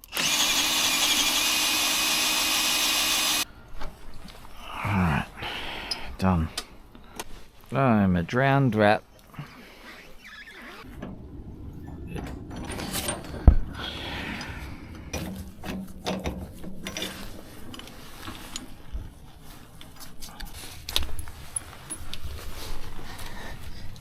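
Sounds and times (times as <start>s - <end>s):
equipment clicks and rattles: 15.0s - 18.8s.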